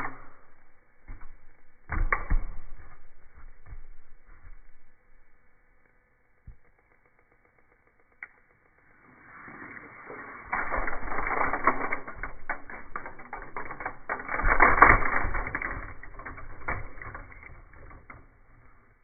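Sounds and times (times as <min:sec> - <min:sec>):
plastic fidget toys clicking: 0:10.5 - 0:18.3.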